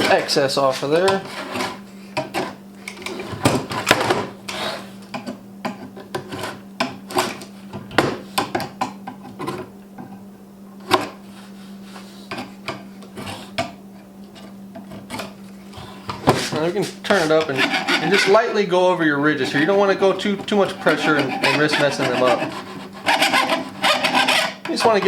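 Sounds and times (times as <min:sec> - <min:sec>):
chisel scraping metal: 0:17.1 - 0:18.5, 0:20.6 - 0:24.7.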